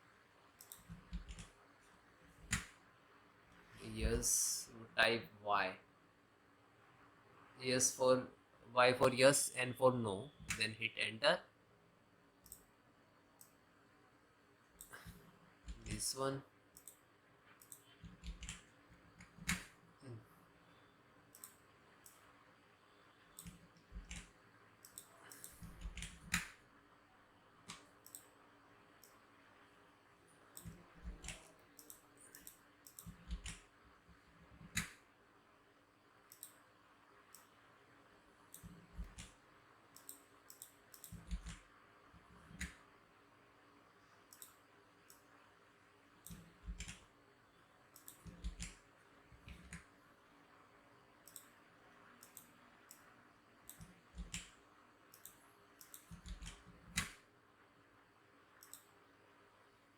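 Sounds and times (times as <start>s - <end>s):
faint steady hiss: 0.0s - 59.9s
keyboard and mouse clicks: 0.6s - 1.6s, 2.4s - 2.8s, 12.4s - 12.7s, 14.8s - 16.1s, 16.7s - 19.8s, 21.3s - 22.3s, 23.3s - 26.6s, 27.6s - 28.3s, 30.5s - 33.7s, 34.4s - 35.0s, 36.3s - 36.6s, 37.3s - 37.5s, 38.5s - 42.8s, 44.3s - 45.3s, 46.2s - 47.1s, 47.9s - 49.9s, 51.2s - 51.6s, 52.2s - 57.2s, 58.6s - 59.0s.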